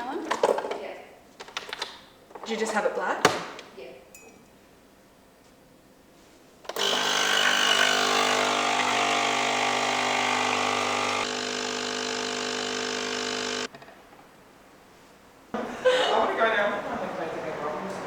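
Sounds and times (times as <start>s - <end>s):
small electric motor running: 6.7s - 13.7s.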